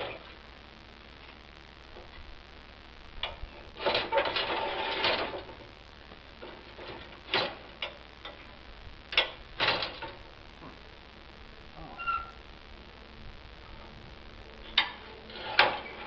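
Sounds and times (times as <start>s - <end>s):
sharp clicks and knocks: 6.4s - 8.5s, 9.1s - 10.8s.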